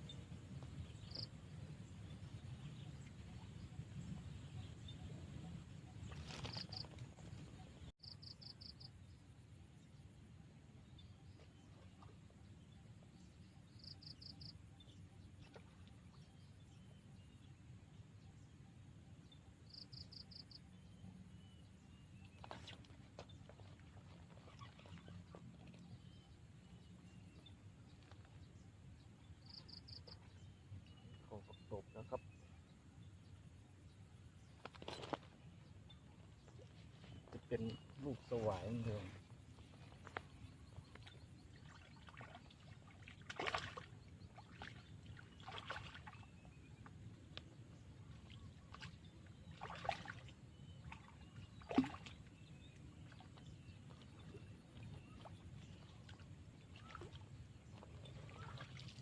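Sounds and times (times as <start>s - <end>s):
bird chirping: 0.0s - 9.0s, 13.4s - 15.0s, 19.2s - 58.9s
water splashing: 40.9s - 46.4s, 48.1s - 59.0s.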